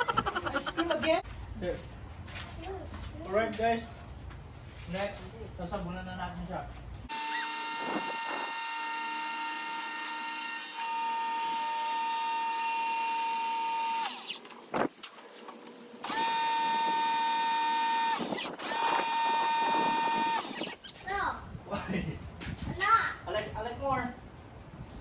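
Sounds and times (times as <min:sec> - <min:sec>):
pressure washer motor whining: 0:07.1 - 0:14.5, 0:16.0 - 0:20.9.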